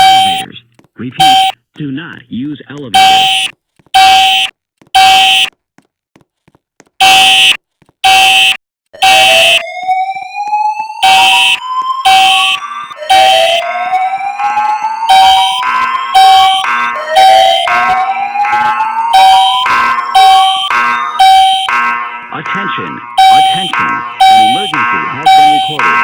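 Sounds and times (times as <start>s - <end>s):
fire alarm horn blasts: 0.0s - 0.5s, 1.2s - 1.6s, 3.0s - 5.5s, 7.0s - 26.0s
rising whoop alarm tone: 9.0s - 22.0s, 23.0s - 26.0s.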